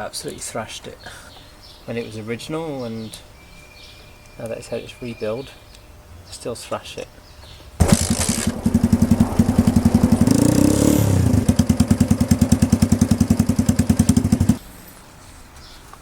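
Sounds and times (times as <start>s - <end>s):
motorcycle engine idling and revving: 7.8s - 14.8s.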